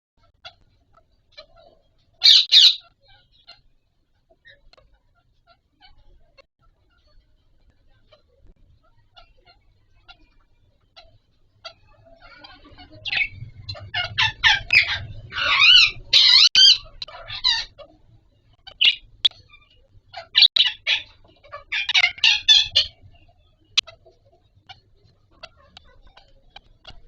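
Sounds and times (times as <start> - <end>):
parakeets squawking: 1.3 - 3.6, 10.9 - 18.0, 18.6 - 27.0.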